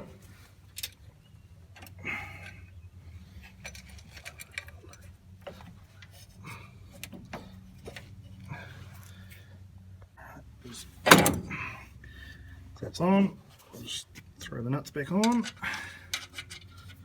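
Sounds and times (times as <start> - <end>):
metallic clicks of washers: 15.1 - 17.0.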